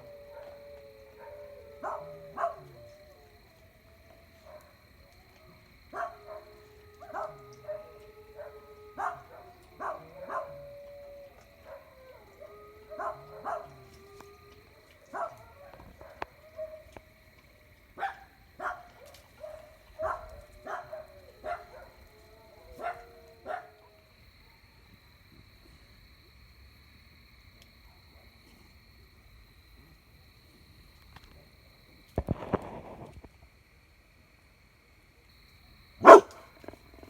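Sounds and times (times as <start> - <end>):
dogs howling: 0.0 - 17.1, 18.0 - 24.0, 36.0 - 36.4
dogs barking: 1.2 - 2.9, 5.4 - 10.7, 12.9 - 13.8, 15.1 - 16.9, 18.0 - 22.0, 36.0 - 36.4.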